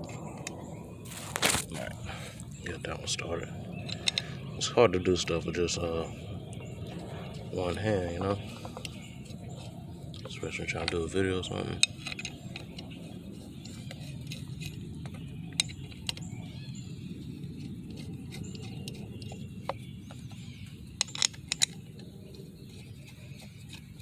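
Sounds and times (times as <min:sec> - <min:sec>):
low background rumble: 0:00.0 - 0:24.0
metallic clicks of hand tools: 0:21.0 - 0:21.8.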